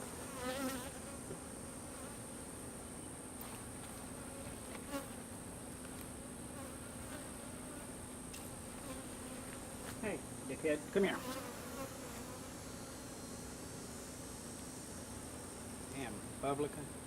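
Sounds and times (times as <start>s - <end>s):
single bee flying close by: 0.0s - 2.3s, 11.0s - 14.3s
honeybees buzzing: 0.0s - 2.6s, 3.4s - 17.0s.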